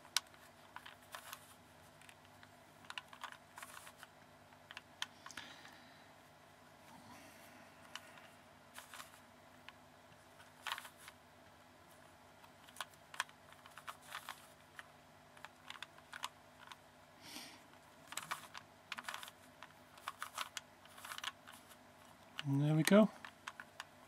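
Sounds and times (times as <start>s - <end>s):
plastic puzzle cube clicks: 18.1s - 21.6s.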